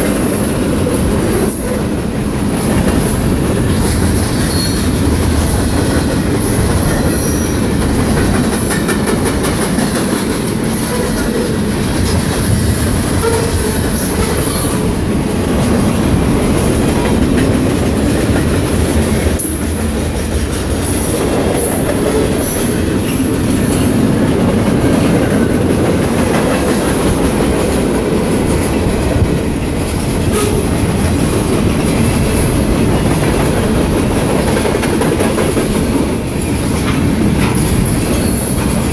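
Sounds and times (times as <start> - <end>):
train wheels clacking over rail joints: 0.0 - 38.9.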